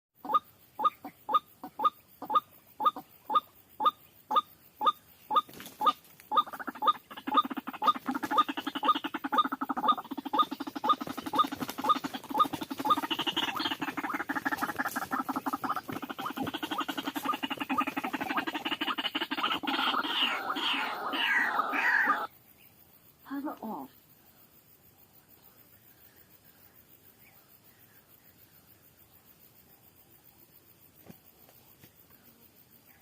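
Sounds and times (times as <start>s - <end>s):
fast run of bird calls: 0.2s - 22.3s
waterhen croaking calls: 0.2s - 22.3s.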